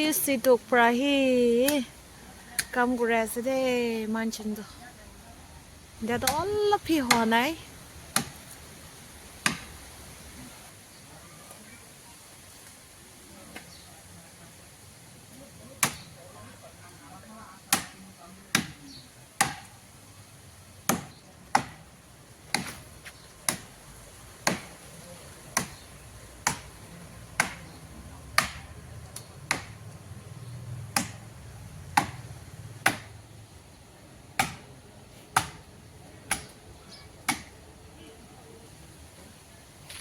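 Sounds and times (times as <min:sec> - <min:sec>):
blade chopping into wood: 0:19.4 - 0:19.7, 0:22.5 - 0:22.8, 0:24.4 - 0:24.8, 0:27.4 - 0:27.8, 0:28.4 - 0:28.7, 0:29.5 - 0:29.8, 0:30.9 - 0:31.2, 0:34.4 - 0:34.7.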